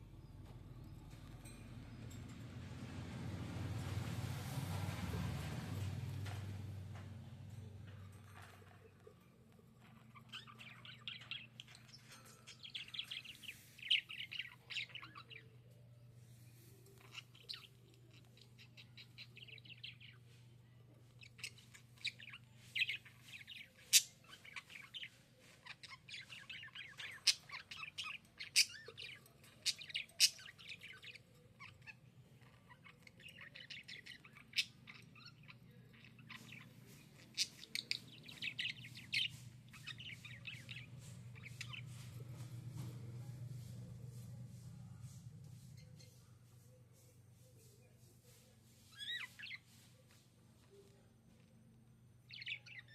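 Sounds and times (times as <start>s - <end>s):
steady low hum: 30.3s - 48.7s
budgerigar chirping: 52.3s - 52.9s.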